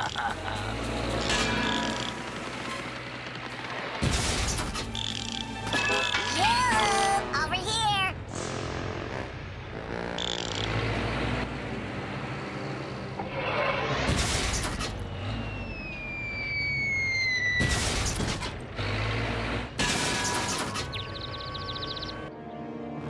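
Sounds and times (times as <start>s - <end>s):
falling whistle: 15.0s - 17.7s.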